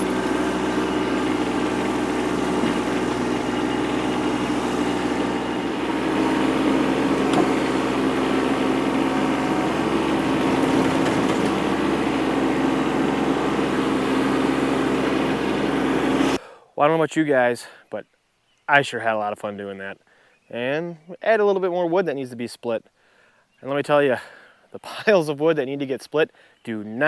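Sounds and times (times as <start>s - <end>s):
engine running steadily: 0.0s - 16.4s.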